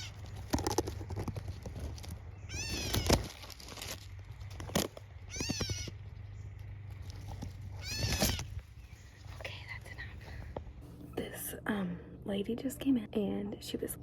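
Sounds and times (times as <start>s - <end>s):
cat meowing: 2.5s - 3.1s, 7.8s - 8.5s.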